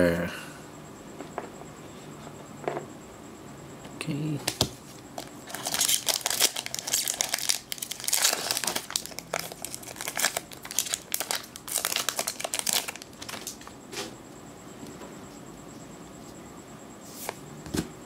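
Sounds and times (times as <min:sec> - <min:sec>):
foil wrapper crinkling and tearing: 0:05.2 - 0:13.7.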